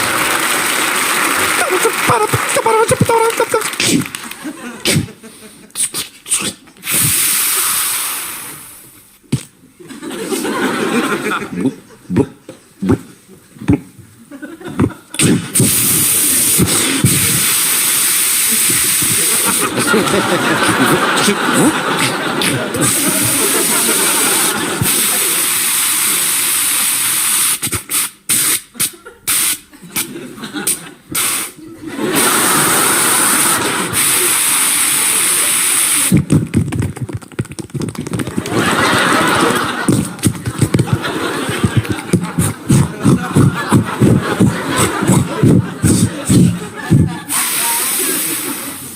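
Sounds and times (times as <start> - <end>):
man imitating shower with mouth: 1.5 - 4.2, 4.8 - 9.6, 11.5 - 14.0, 14.7 - 30.1, 30.7 - 31.6, 32.2 - 36.6, 39.6 - 48.9
clicking and popping mouth noises: 2.4 - 7.3, 9.2 - 9.6, 12.1 - 14.0, 21.2 - 23.3, 36.0 - 38.6, 39.8 - 47.1.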